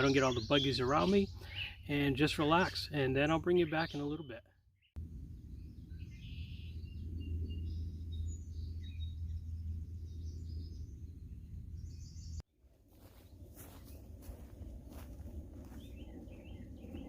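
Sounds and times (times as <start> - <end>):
small birds chirping: 0.0 - 12.4, 13.0 - 17.0
low outdoor rumble: 5.0 - 17.0.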